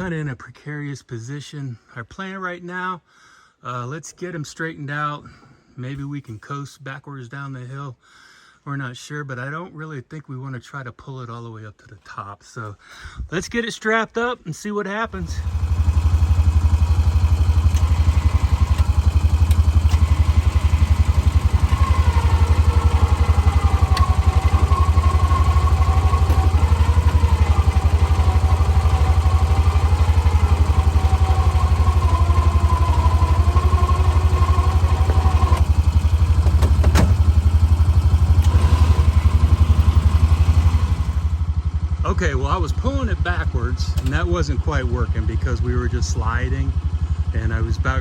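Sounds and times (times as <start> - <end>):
utility vehicle engine under load: 15.0 - 48.0.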